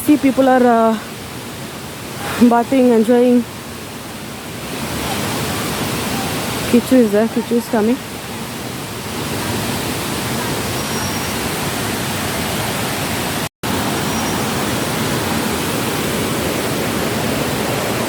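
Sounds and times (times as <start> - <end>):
waterfall roaring: 0.0 - 18.0.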